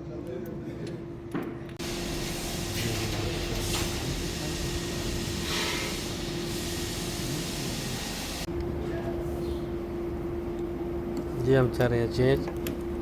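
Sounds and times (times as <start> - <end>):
constant hum: 0.0 - 13.0
loud rushing hiss: 1.8 - 8.5.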